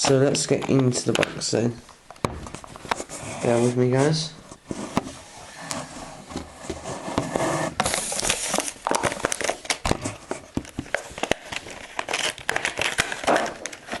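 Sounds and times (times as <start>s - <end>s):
plastic packaging crinkling: 7.8s - 14.0s.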